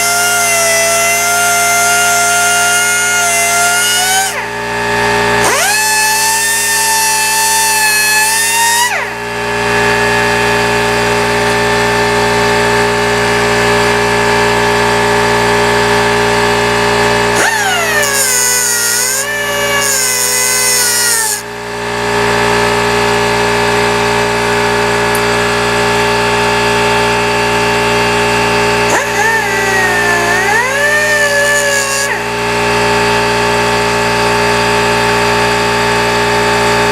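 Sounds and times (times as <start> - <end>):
die grinder cutoff wheel whining: 0.0 - 36.9.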